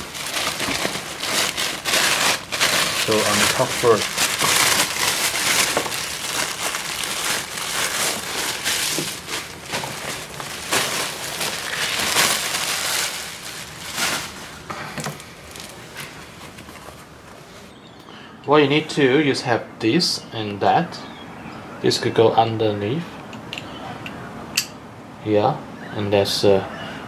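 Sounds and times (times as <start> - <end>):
packaging crinkling: 0.0 - 17.7.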